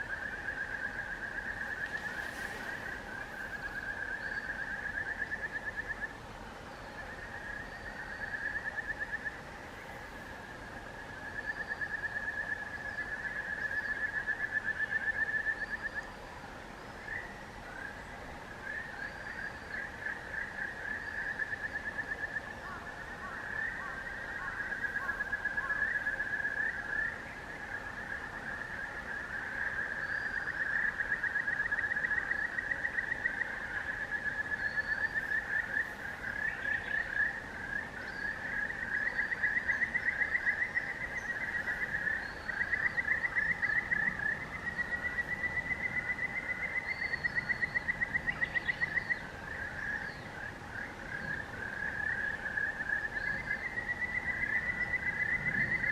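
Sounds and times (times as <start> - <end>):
faint bird chirps: 0.0 - 55.9
frogs trilling: 0.0 - 55.9.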